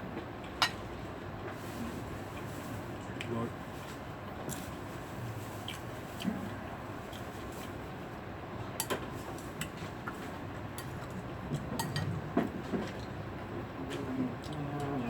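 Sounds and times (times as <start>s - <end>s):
spoon and dishes clinking: 11.8s - 12.1s.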